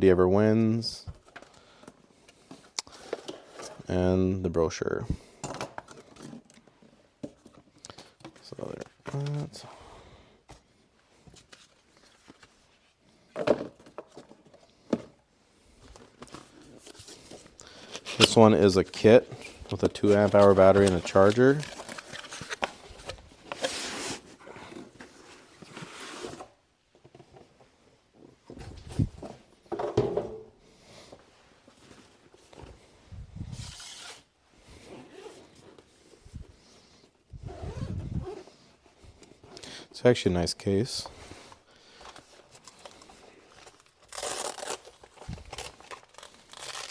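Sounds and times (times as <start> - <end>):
case and packaging handled: 15.8 - 27.6, 41.5 - 46.9.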